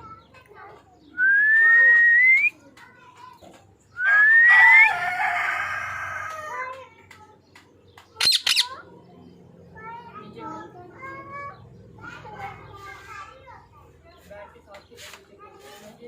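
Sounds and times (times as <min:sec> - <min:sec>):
parrot whistling and calling: 0:08.2 - 0:08.7
parrot screeching: 0:08.2 - 0:08.8.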